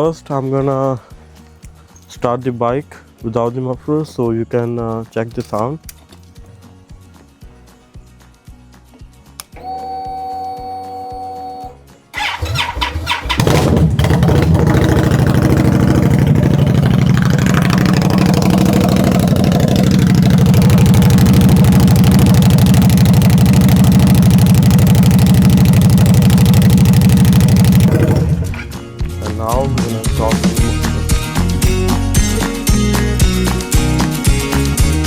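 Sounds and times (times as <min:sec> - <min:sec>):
motorcycle engine idling loudly: 0:12.2 - 0:28.7
motorcycle starter cranking: 0:12.2 - 0:28.7.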